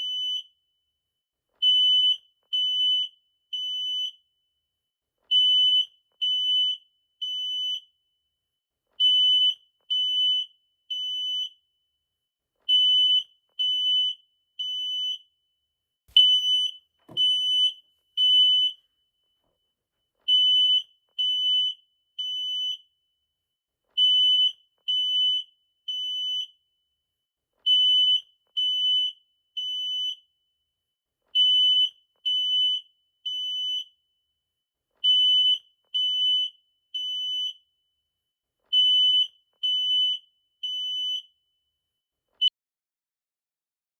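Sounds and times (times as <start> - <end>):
smoke detector alarm beeping: 1.6 - 4.2, 5.3 - 8.0, 9.0 - 11.7, 12.7 - 15.3, 16.1 - 18.9, 20.2 - 22.9, 31.4 - 34.0, 35.0 - 37.7, 38.7 - 41.4.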